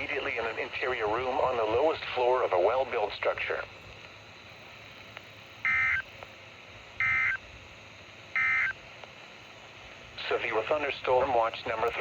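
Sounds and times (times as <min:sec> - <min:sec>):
faint radio hiss: 0:00.0 - 0:12.0
digital data tone bursts: 0:05.6 - 0:06.1, 0:07.0 - 0:07.4, 0:08.4 - 0:08.8.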